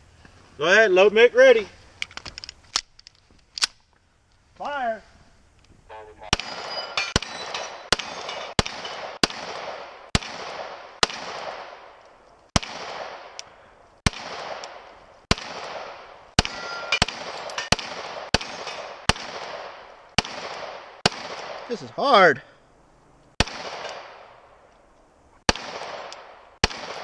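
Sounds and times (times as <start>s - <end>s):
echoing gunshots: 6.2s - 21.9s, 23.4s - 24.5s, 25.5s - 27.0s.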